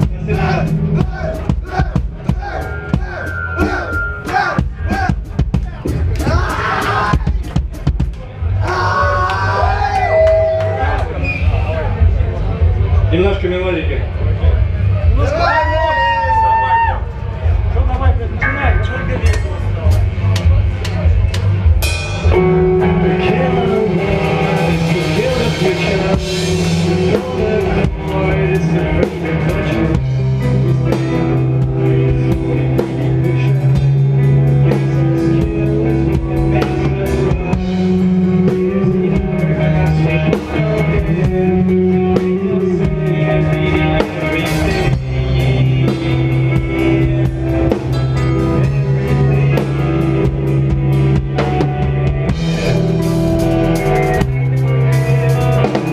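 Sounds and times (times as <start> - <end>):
drum kit with cymbals: 0.0 - 9.8, 18.4 - 55.9
bass guitar: 0.0 - 55.9
electric guitar: 18.4 - 55.9.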